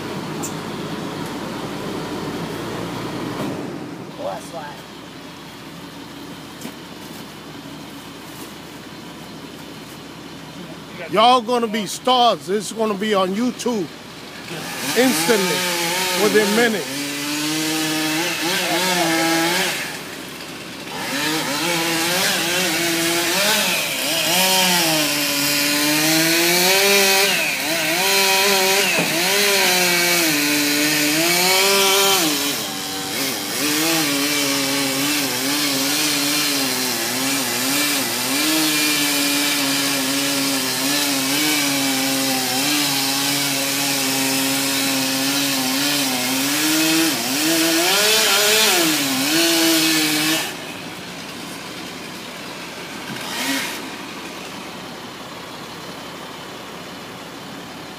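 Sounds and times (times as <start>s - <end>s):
chainsaw cutting wood: 11.1s - 54.9s.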